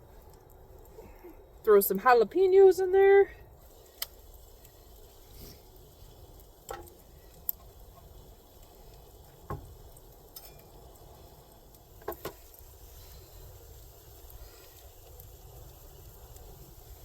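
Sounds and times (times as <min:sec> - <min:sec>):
meat sizzling in a pan: 0:03.6 - 0:17.0.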